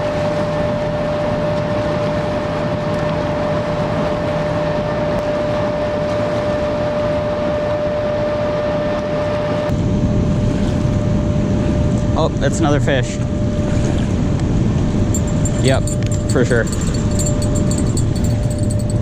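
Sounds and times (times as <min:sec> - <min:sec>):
rushing outdoor noise: 0:07.2 - 0:19.0
thin whine: 0:14.8 - 0:19.0.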